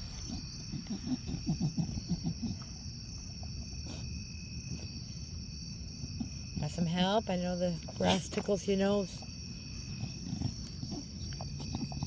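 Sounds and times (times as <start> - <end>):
dog snuffling: 0.0 - 5.1, 9.7 - 12.0
crickets chirping: 0.0 - 12.0.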